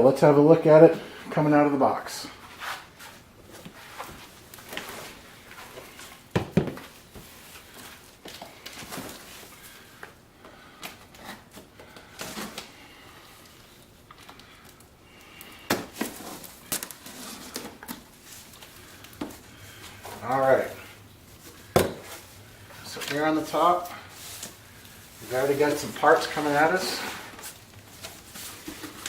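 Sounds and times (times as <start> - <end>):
cardboard packing rustling: 2.3 - 10.2, 10.8 - 29.0.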